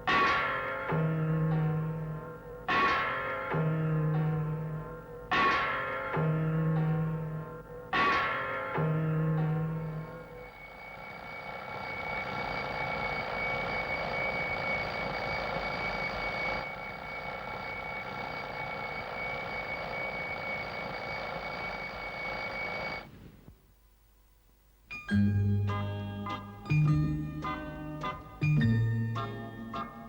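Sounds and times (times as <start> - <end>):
alarm clock bell ringing: 0.0 - 23.1.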